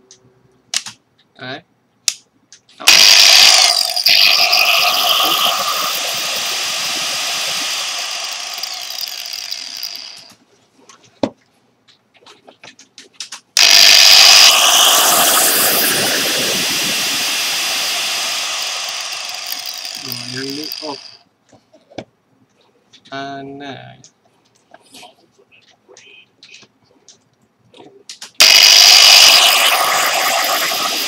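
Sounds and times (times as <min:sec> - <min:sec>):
angle grinder motor whine: 0:02.9 - 0:10.3, 0:13.6 - 0:21.2, 0:28.4 - 0:31.0.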